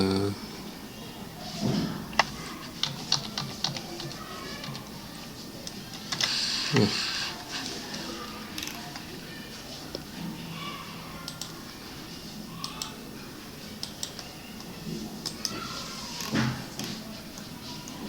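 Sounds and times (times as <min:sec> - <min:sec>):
faint room noise: 0:00.0 - 0:18.0
computer mouse clicks: 0:11.2 - 0:11.6, 0:13.8 - 0:15.6.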